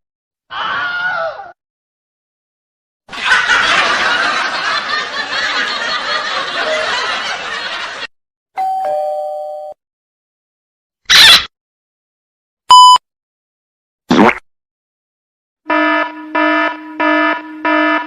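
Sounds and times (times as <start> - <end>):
two-note doorbell chime: 8.6 - 9.8.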